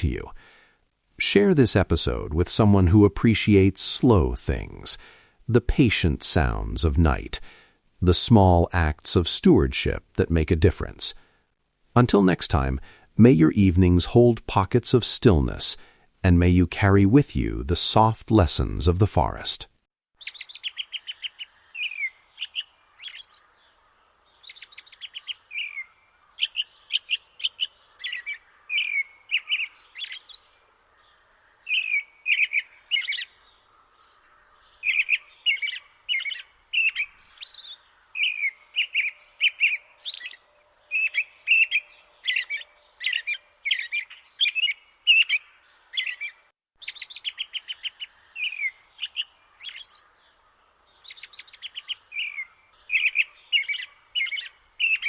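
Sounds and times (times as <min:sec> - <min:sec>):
faint background hiss: 0:00.0 - 0:55.0
small bird chirping: 0:20.2 - 0:55.0.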